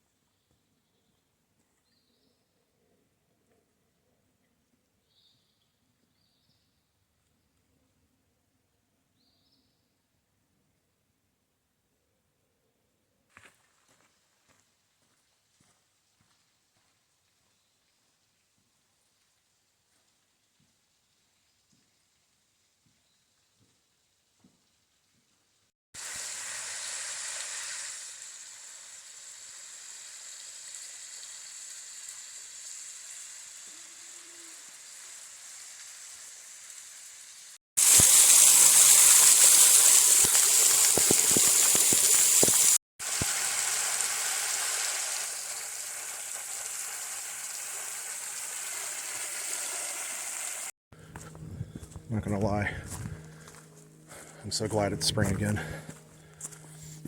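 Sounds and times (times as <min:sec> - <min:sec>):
rushing water: 0:37.8 - 0:45.8.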